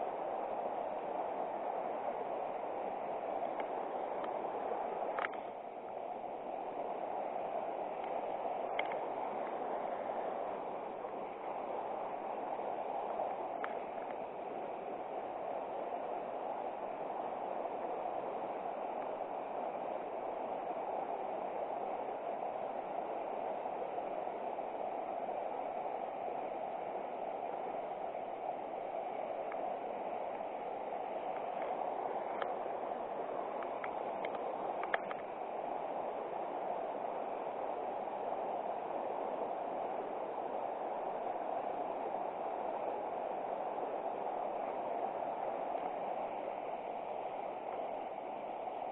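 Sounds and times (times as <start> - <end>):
faint ticks: 3.4 - 4.4, 5.1 - 5.6, 8.0 - 9.6, 13.1 - 14.2, 33.6 - 35.3.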